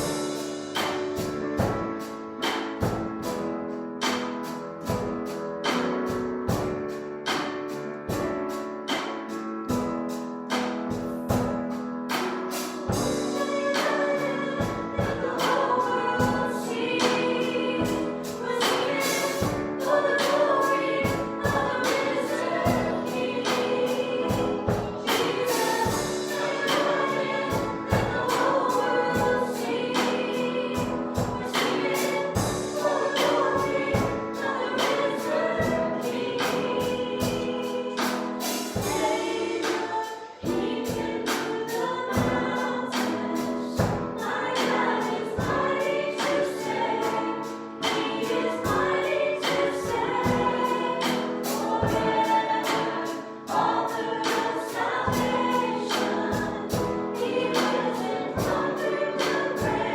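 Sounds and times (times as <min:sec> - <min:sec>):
group singing worship song: 0:00.0 - 0:09.9, 0:10.5 - 0:59.9
drum beat: 0:12.7 - 0:42.5, 0:48.0 - 0:59.9.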